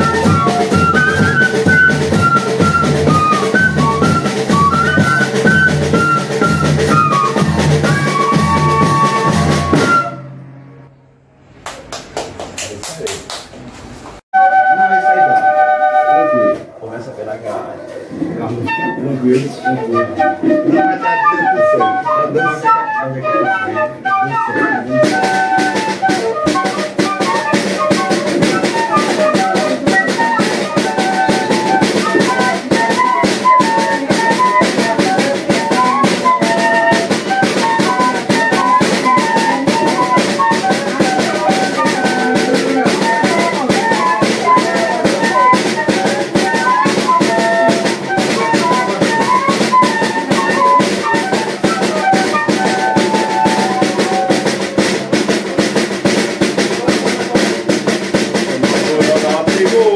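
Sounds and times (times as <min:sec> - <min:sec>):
snare drum: 0:00.0 - 0:10.2, 0:24.6 - 0:59.9
fife melody: 0:00.0 - 0:11.6, 0:14.4 - 0:59.9.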